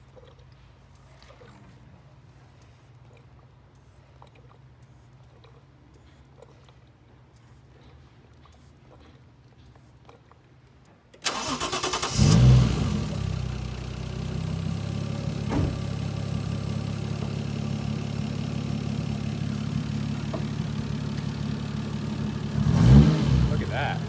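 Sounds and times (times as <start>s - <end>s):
starter cranking engine: 11.2s - 24.0s
car engine revving and idling: 11.4s - 24.0s.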